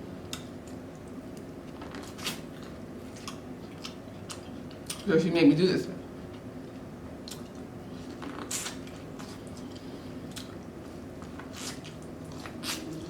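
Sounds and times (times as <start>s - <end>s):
faint steady hum: 0.0s - 13.0s
person chewing food: 0.2s - 5.1s, 6.2s - 13.0s.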